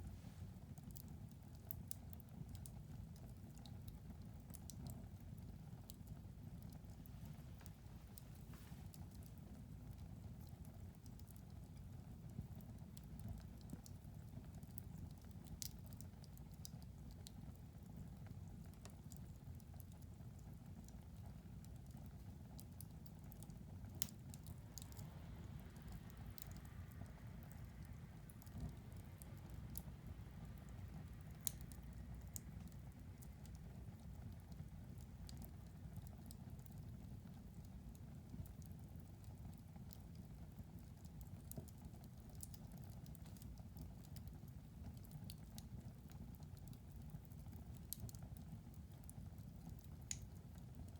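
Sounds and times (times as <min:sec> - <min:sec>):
low rumble of flames: 0:00.0 - 0:50.9
wood fire crackling: 0:00.0 - 0:50.9
soft hiss: 0:06.2 - 0:09.8, 0:23.4 - 0:36.2
sharp pops and snaps: 0:22.6 - 0:30.0, 0:30.6 - 0:36.8, 0:49.8 - 0:50.4.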